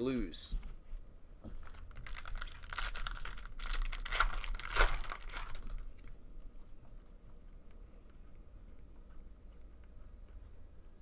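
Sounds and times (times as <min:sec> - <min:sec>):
wrapper tearing and crinkling: 0:01.6 - 0:06.1.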